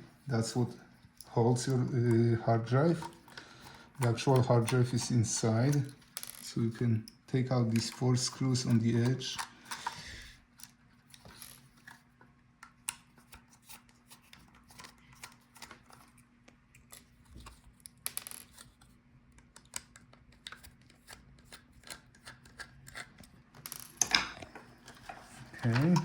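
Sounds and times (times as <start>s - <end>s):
metal caddy being handled: 24.0s - 26.0s.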